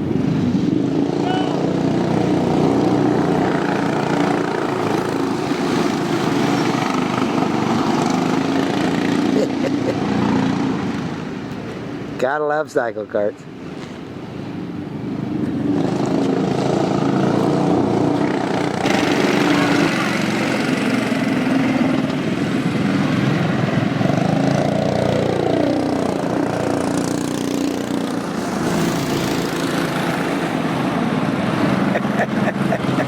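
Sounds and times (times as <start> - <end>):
small engines running: 15.9 - 23.2.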